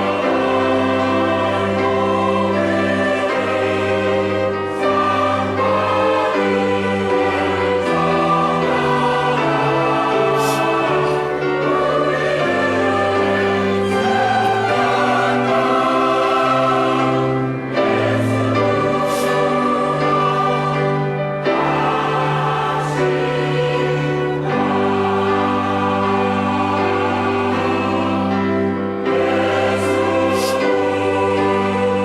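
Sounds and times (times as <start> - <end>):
church choir singing: 0.0 - 32.0.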